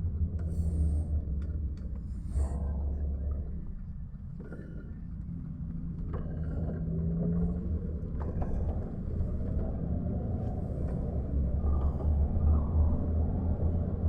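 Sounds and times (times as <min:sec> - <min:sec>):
car engine and road noise: 0:06.6 - 0:14.0.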